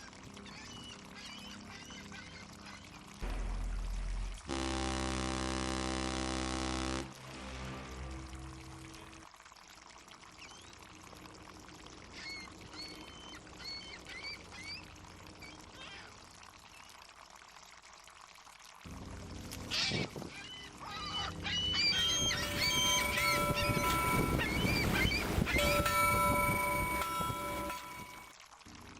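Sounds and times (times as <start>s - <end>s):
low steady drone: 3.2s - 9.2s, 21.9s - 28.3s
water lapping: 19.3s - 28.3s
gull calls: 19.6s - 28.2s.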